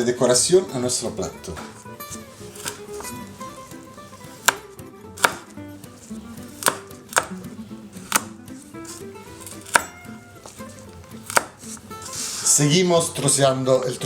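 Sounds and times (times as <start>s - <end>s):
knife chopping on cutting board: 1.6s - 12.4s.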